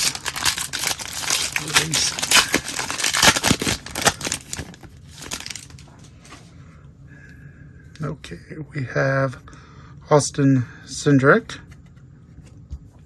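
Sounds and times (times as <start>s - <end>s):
wrapper tearing and crinkling: 0.0s - 5.9s.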